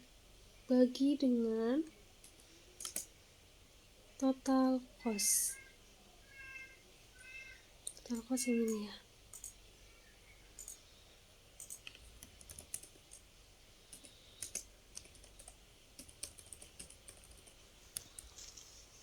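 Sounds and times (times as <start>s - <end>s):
keyboard typing clicks: 2.2s - 3.1s, 7.9s - 9.6s, 10.6s - 10.8s, 11.6s - 13.2s, 13.9s - 18.2s.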